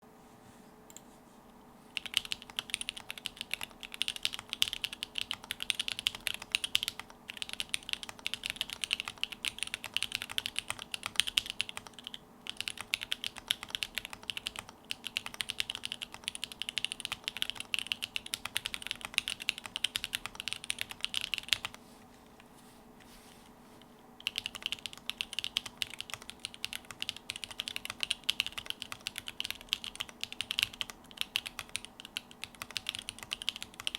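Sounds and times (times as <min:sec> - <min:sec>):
faint steady hum: 0:00.0 - 0:33.9
mechanical keyboard typing: 0:02.0 - 0:21.8, 0:24.2 - 0:33.9.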